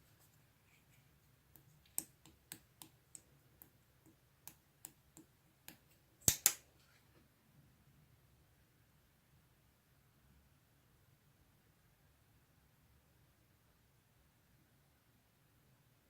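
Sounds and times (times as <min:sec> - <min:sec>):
slime clicking and popping: 0:05.7 - 0:06.6
slime snapping: 0:05.7 - 0:06.6.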